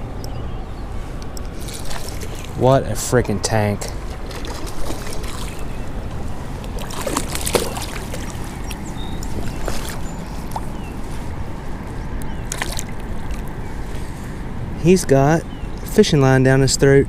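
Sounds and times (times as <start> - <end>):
small splashes and clicks: 1.4 - 2.6, 4.1 - 5.8, 6.6 - 10.7, 12.2 - 14.0
river water rushing: 1.4 - 2.8, 3.6 - 10.9.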